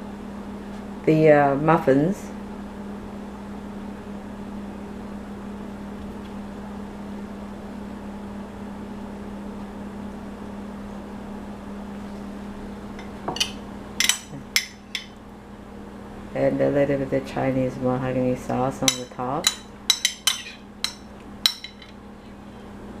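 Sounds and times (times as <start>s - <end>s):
low hum of room noise: 0.0s - 23.0s
dishes clinking: 13.0s - 15.2s, 18.9s - 22.0s.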